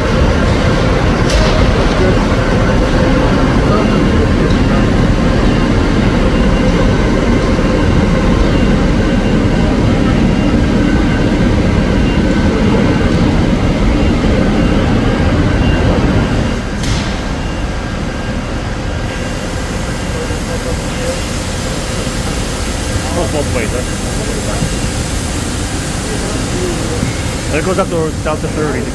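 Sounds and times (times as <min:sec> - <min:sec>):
band saw running: 0:19.0 - 0:28.9.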